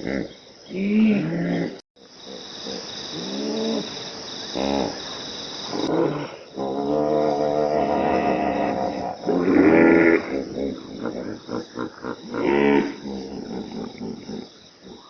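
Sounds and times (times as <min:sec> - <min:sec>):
steady high hiss: 0:02.0 - 0:07.4.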